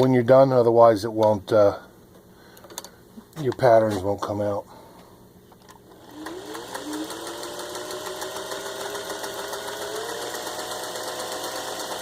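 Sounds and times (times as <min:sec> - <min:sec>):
sewing machine motor hum: 0:05.9 - 0:12.0.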